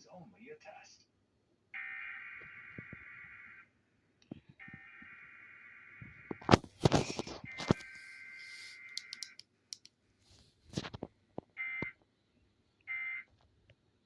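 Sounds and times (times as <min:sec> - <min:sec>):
clicks: 0:08.9 - 0:10.0.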